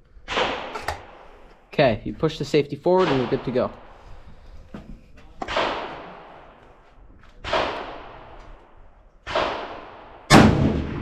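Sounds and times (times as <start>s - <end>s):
rifle shots echoing: 0.2s - 1.5s, 3.0s - 4.0s, 5.4s - 6.6s, 7.4s - 11.0s.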